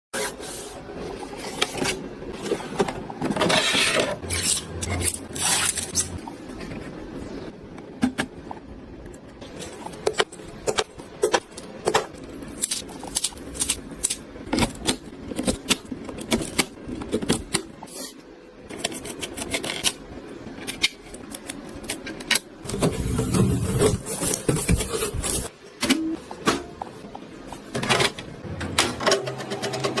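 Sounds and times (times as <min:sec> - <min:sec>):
handling scraping and rubbing: 0:22.6 - 0:25.5.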